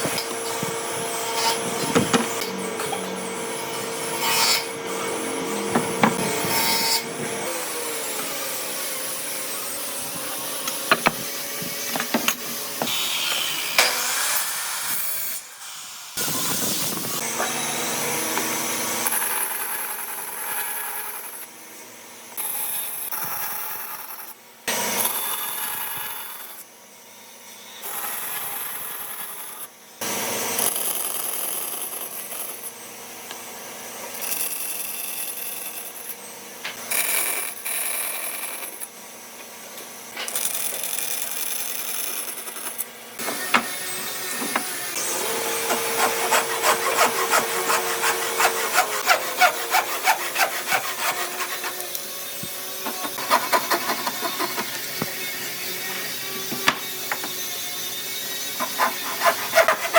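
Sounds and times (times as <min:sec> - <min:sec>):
power tool sanding: 0:00.0 - 0:15.4, 0:43.2 - 0:59.9
sawing wood: 0:00.0 - 0:15.5, 0:40.2 - 0:59.9
sharp knocks: 0:05.7 - 0:06.3, 0:10.9 - 0:13.0.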